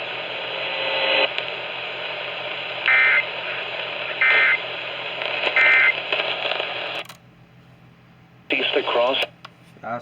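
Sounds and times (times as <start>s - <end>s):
radio hiss: 0.0s - 7.0s, 8.5s - 9.3s.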